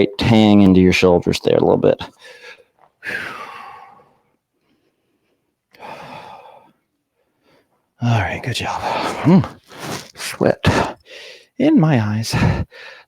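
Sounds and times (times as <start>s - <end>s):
person sighing heavily: 8.8s - 11.0s.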